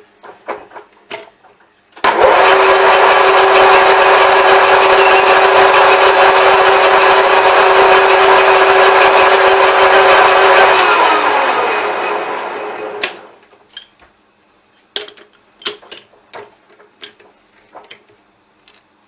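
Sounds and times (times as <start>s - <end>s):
lathe running with whir: 2.1s - 13.4s
lathe spindle winding down: 2.1s - 13.4s.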